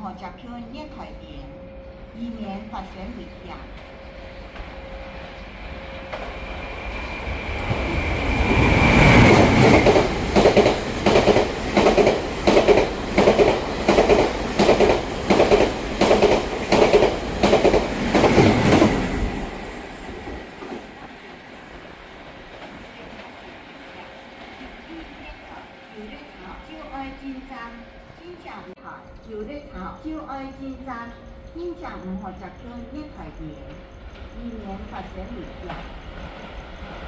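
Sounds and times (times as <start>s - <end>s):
train rumbling past: 0.0s - 37.0s
train wheels clacking on rail joints: 3.8s - 23.6s.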